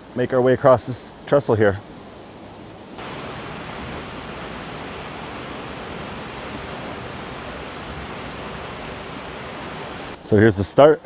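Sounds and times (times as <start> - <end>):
creek water rushing: 3.0 - 10.2.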